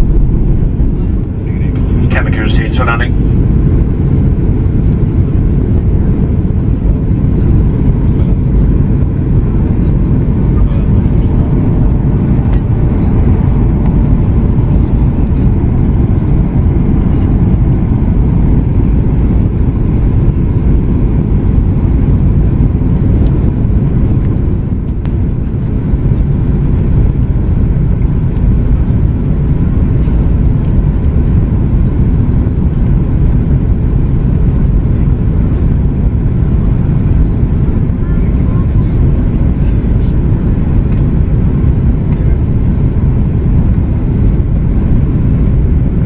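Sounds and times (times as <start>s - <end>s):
airliner cabin engine noise: 0.0s - 46.0s.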